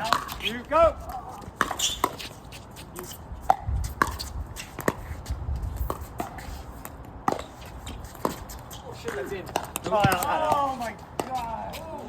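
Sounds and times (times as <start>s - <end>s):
ball bouncing on court: 0.0s - 0.5s, 1.6s - 2.2s, 9.0s - 11.9s
wind rumbling on microphone: 3.2s - 6.6s.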